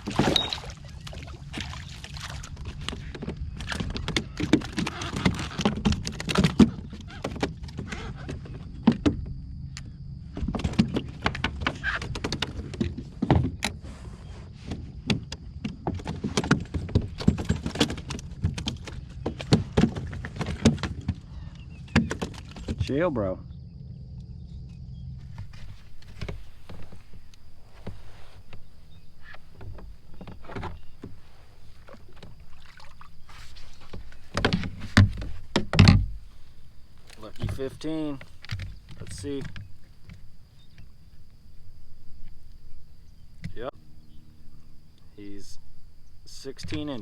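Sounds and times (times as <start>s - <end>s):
knocks and rattles on plastic kayak: 0.0s - 23.1s, 25.2s - 42.4s, 46.6s - 47.0s
steady low rumble: 22.9s - 32.5s.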